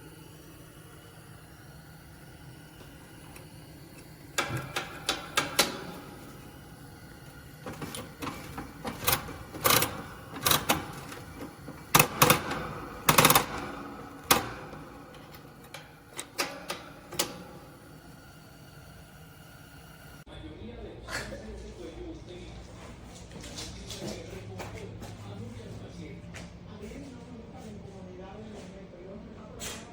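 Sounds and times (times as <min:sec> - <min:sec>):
sharp clicks and knocks: 0:02.8 - 0:06.6, 0:07.2 - 0:17.7.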